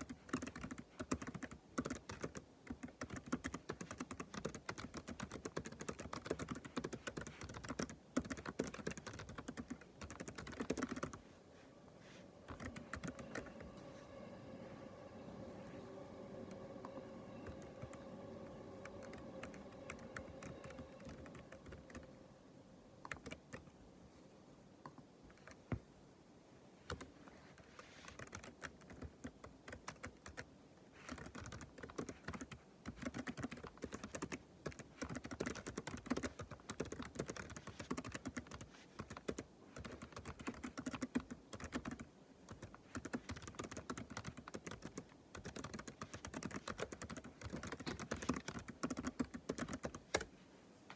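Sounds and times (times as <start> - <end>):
typing on computer keyboard: 0.0 - 11.2, 12.5 - 13.5, 17.4 - 22.0, 23.0 - 23.7, 26.9 - 27.1, 28.0 - 50.3
faint steady hum: 0.0 - 50.9.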